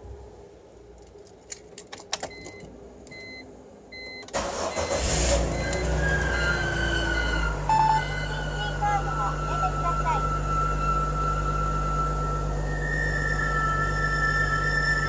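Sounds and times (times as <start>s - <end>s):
car engine cranking and starting: 4.0s - 15.0s
high thin squeal: 9.5s - 15.0s.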